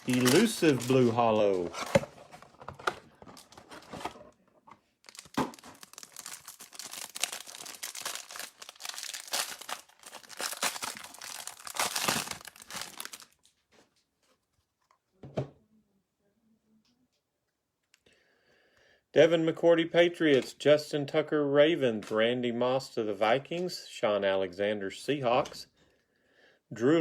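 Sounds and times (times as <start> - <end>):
packaging crinkling and tearing: 0.0 - 4.3, 5.0 - 13.5.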